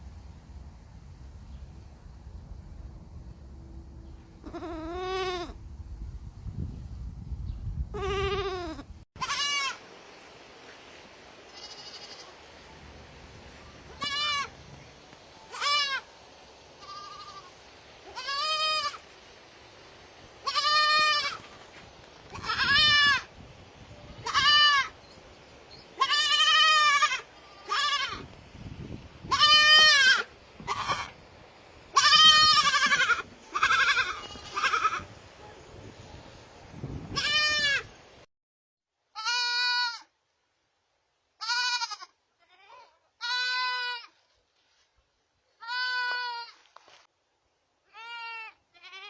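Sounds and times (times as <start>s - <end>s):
baby goat bleating: 4.4s - 5.6s, 7.9s - 9.8s, 11.5s - 12.3s, 13.9s - 14.5s, 15.5s - 16.1s, 16.8s - 17.5s, 18.1s - 19.0s, 20.4s - 21.5s, 22.3s - 23.3s, 24.2s - 25.0s, 26.0s - 28.3s, 29.3s - 31.2s, 31.9s - 35.1s, 37.1s - 37.9s, 39.1s - 40.1s, 41.4s - 44.2s, 45.6s - 46.6s, 47.9s - 49.0s.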